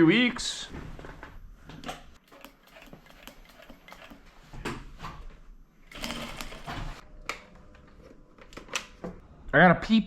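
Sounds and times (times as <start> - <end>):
sewing machine stitching: 2.2 - 4.3, 5.9 - 7.0.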